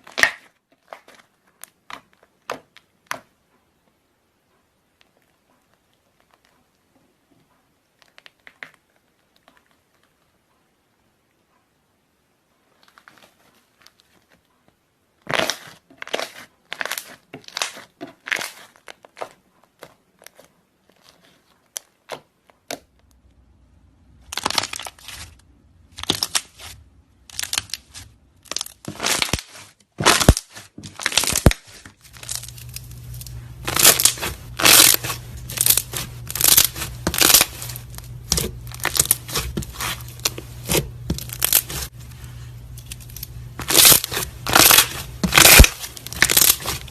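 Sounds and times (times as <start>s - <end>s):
steady low hum: 32.0s - 46.9s.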